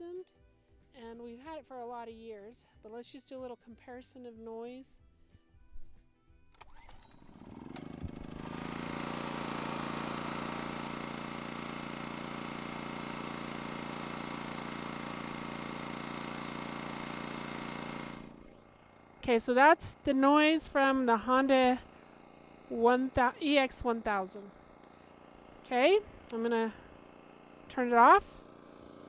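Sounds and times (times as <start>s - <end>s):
generator engine running: 6.8s - 29.0s.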